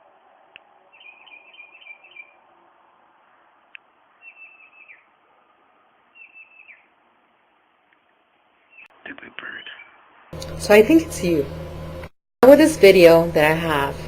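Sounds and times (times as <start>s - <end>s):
bird chirping and trilling: 0.9s - 2.4s, 4.2s - 5.2s, 6.1s - 6.9s, 8.6s - 10.0s.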